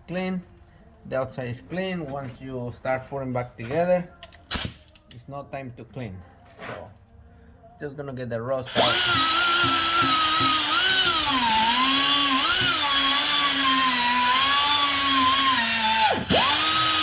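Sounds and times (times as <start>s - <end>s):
power tool grinding metal: 8.7s - 17.0s.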